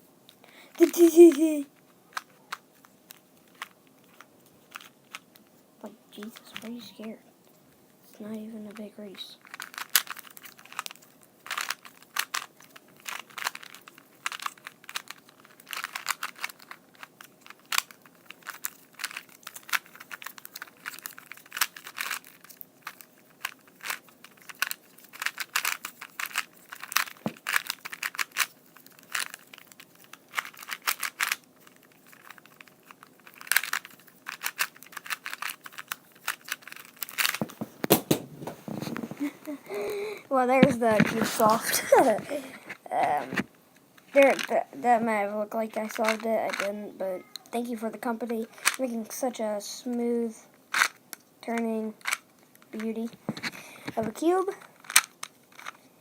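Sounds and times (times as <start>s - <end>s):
puzzle cube plastic clicks: 0.7s - 5.5s, 6.2s - 7.1s, 8.1s - 38.3s, 44.1s - 44.6s, 45.8s - 46.7s, 47.4s - 48.8s, 50.7s - 55.8s.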